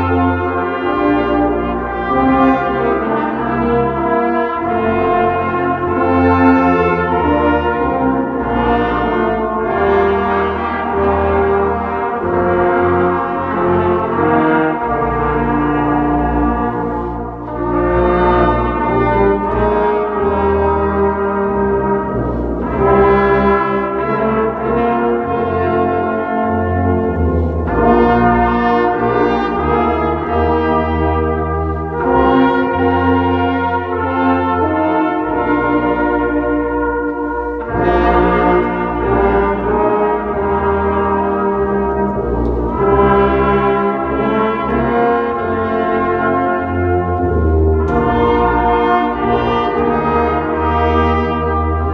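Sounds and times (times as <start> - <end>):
brass chords: 0.0 - 51.9
deep bass line: 12.2 - 25.5, 41.5 - 44.5, 46.2 - 50.2.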